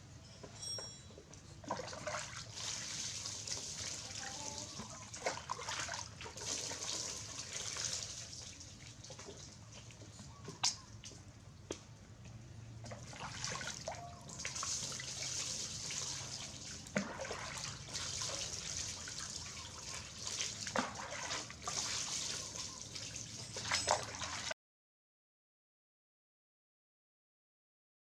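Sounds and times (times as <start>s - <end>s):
bath water trickling and splashing: 1.6s - 11.2s, 12.8s - 24.6s.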